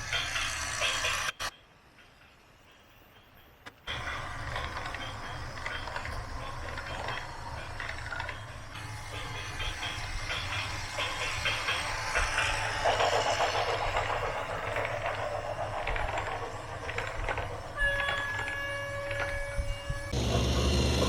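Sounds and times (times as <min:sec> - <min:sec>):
engine running: 0:03.9 - 0:17.8, 0:20.1 - 0:21.0
heavy machinery clattering: 0:03.9 - 0:18.5.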